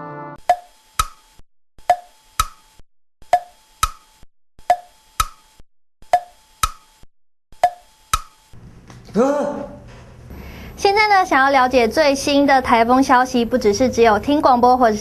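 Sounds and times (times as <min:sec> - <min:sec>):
wood block clicks: 0:01.9 - 0:02.7, 0:03.3 - 0:07.0, 0:07.6 - 0:08.5.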